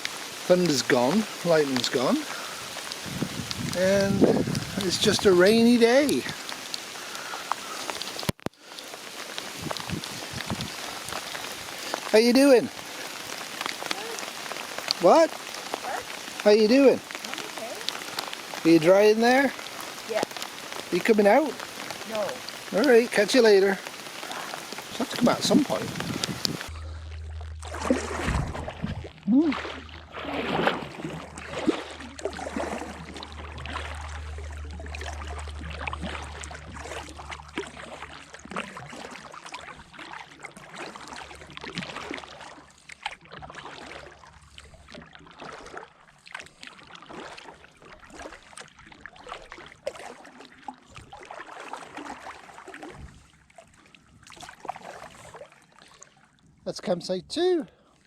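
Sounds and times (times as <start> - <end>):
paddle splashing water: 0.0 - 56.6
low steady rumble: 25.8 - 38.5.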